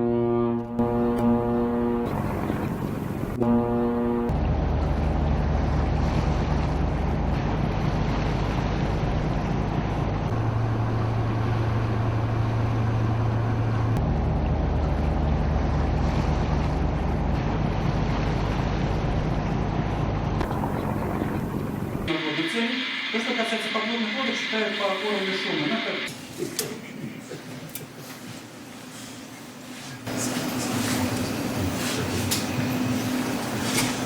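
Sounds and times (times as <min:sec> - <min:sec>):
boat engine humming: 0:00.0 - 0:26.1, 0:30.1 - 0:34.0
water noise: 0:20.4 - 0:26.1.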